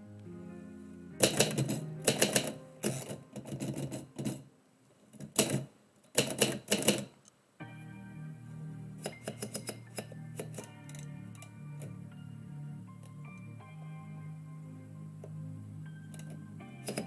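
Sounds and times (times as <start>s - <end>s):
soft background music: 0.0s - 17.0s
typewriter keys typing: 1.2s - 4.4s, 5.2s - 7.2s, 9.1s - 11.5s, 16.2s - 17.0s.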